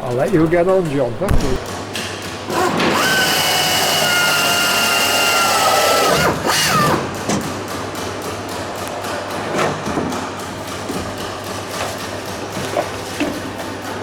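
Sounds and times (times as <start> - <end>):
power drill whining: 2.5 - 7.2.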